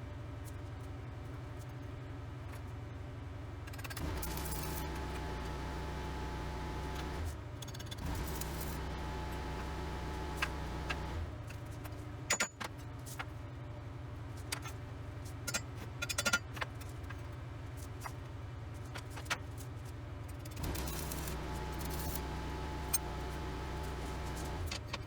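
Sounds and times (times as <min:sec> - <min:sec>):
low hum: 0:20.6 - 0:24.7.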